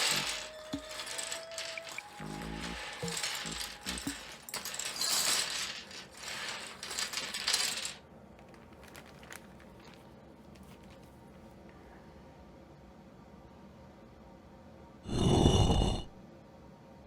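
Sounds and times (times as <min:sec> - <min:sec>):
plastic keycaps clattering: 0:00.0 - 0:10.0.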